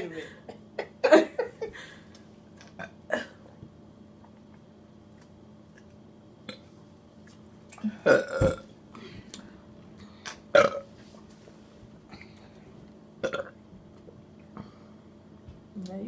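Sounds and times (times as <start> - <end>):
person burping: 2.7 - 3.6, 7.8 - 8.7, 10.5 - 10.9, 13.2 - 13.6.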